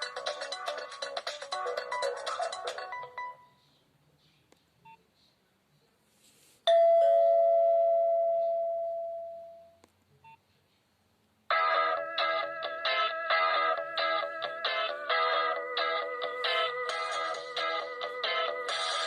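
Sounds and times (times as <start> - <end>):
polyphonic ringtone melody: 0.0 - 3.5, 11.5 - 19.0.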